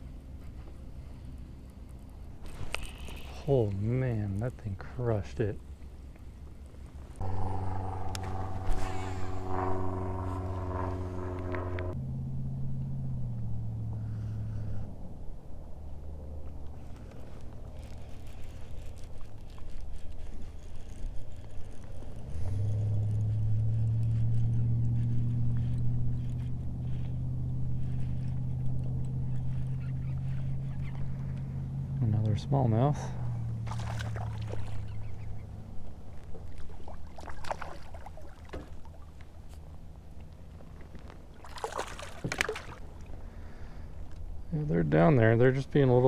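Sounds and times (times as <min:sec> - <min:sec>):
small motor humming: 0:07.2 - 0:12.0
water splashes: 0:33.5 - 0:35.2, 0:36.2 - 0:39.3, 0:40.2 - 0:43.2.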